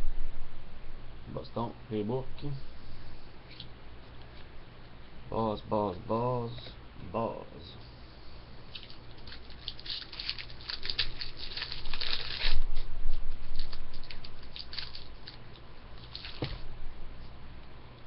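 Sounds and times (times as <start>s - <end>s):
foil card pack crinkling and tearing: 8.7s - 16.6s
cards being handled: 8.8s - 15.4s, 16.0s - 16.6s.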